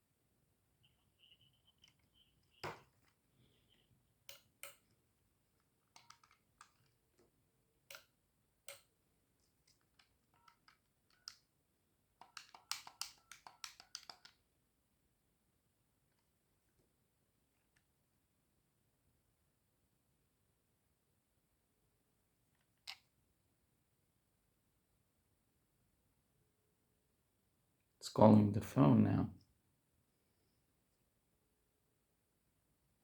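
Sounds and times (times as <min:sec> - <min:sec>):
phone keypad buttons clicking: 0:05.9 - 0:06.8, 0:12.2 - 0:14.4.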